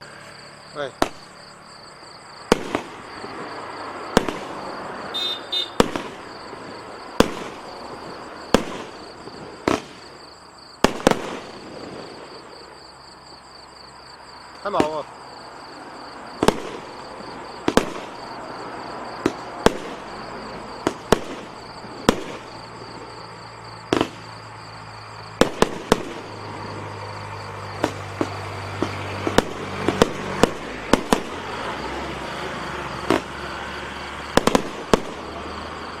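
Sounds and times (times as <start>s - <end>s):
firework cake bangs: 1.0s - 1.3s, 2.4s - 3.5s, 4.1s - 10.2s, 10.8s - 12.4s, 14.6s - 15.1s, 16.4s - 18.5s, 19.1s - 23.2s, 23.8s - 24.4s, 25.3s - 26.5s, 27.8s - 31.7s, 33.0s - 33.4s, 34.2s - 35.8s.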